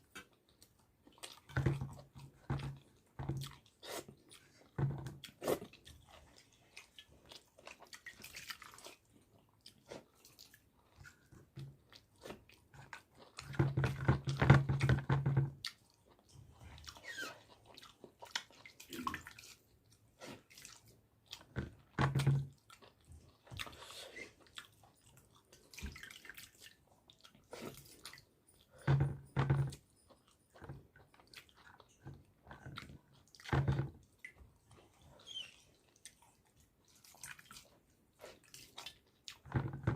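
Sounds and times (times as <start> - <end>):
wet squelching and dripping: 6.3 - 12.7, 22.6 - 28.4, 33.2 - 39.5.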